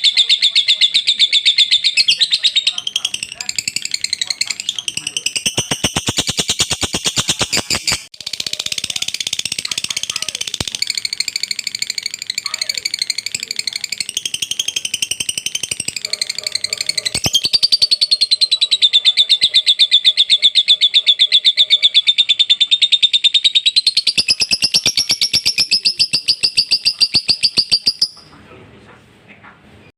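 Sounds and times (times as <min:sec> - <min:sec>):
lovebird chattering trill: 0:00.0 - 0:28.3.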